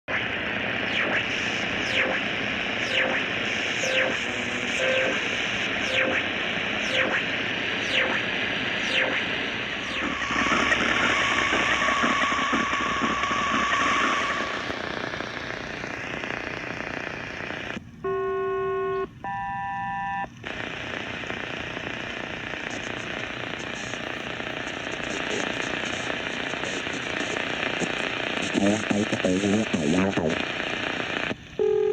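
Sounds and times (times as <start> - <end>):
steady radio tone: 0.1 - 19.1, 20.4 - 31.4
shortwave radio static: 0.1 - 19.2, 20.4 - 31.7
bursts of steady tones: 0.7 - 16.4.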